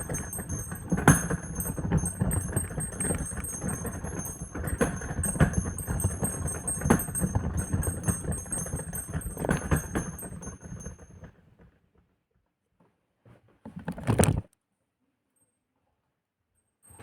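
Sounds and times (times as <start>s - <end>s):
low clattering rumble: 0.0s - 11.0s
small metal bells ringing: 0.0s - 11.1s.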